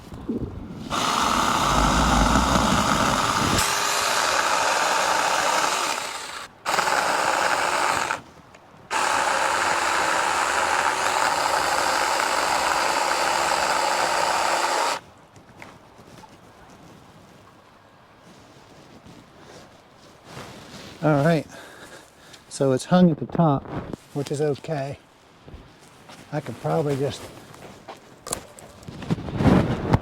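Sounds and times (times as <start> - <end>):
chainsaw cutting wood: 0.9 - 8.3, 8.9 - 15.0.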